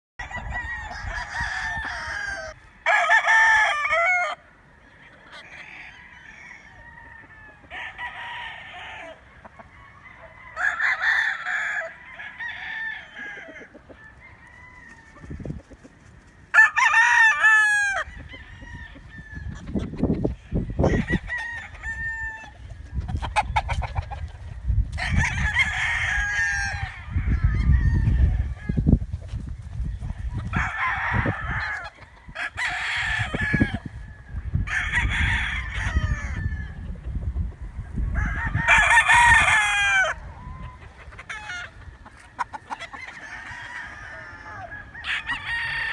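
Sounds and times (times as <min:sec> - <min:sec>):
roosters crowing: 0:00.2 - 0:45.9
hens clucking: 0:07.0 - 0:10.7, 0:13.0 - 0:16.5, 0:18.0 - 0:25.2, 0:35.8 - 0:45.9.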